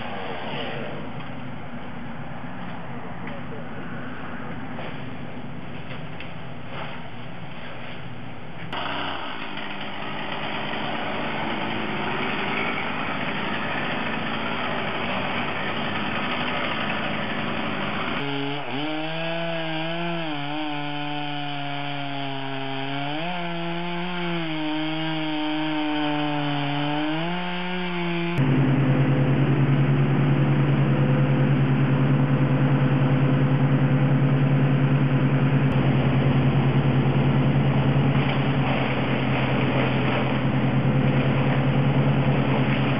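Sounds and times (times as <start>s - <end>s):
loud steady engine drone: 0.0s - 6.9s, 8.2s - 42.9s
chainsaw engine revving: 8.7s - 28.4s.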